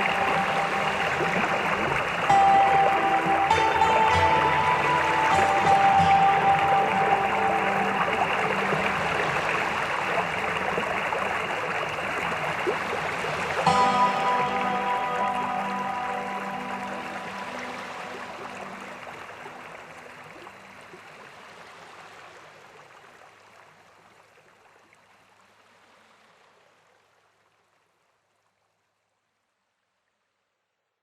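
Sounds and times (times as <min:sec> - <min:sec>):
soft background music: 0:00.0 - 0:21.3
cascading water rushing: 0:00.0 - 0:23.6.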